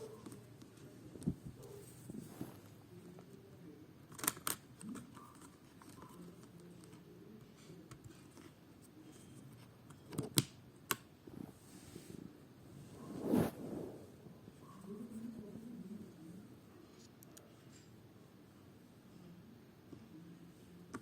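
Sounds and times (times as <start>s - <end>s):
faint rustling: 0.0s - 2.8s, 11.3s - 17.2s.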